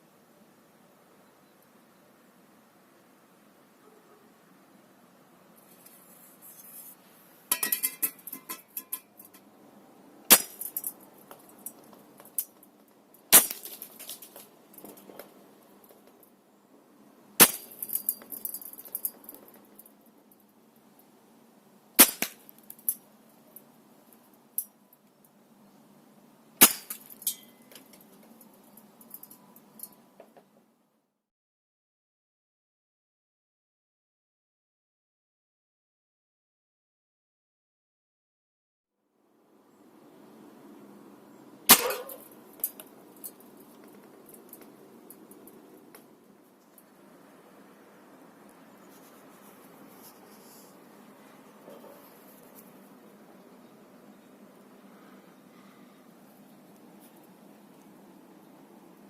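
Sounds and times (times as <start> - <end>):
metallic ring: 7.5 - 9.4.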